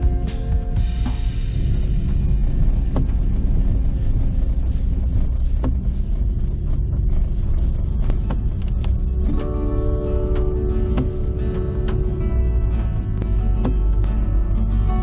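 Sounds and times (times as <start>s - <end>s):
car road and engine rumble: 0.0s - 15.0s
music: 0.0s - 15.0s
sharp clicks and knocks: 2.8s - 3.4s, 5.6s - 6.0s.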